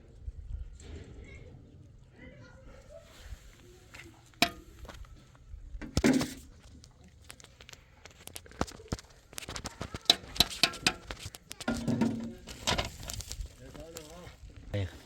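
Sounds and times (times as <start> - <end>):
sharp knocks and clatter: 4.4 - 5.0, 8.9 - 13.3.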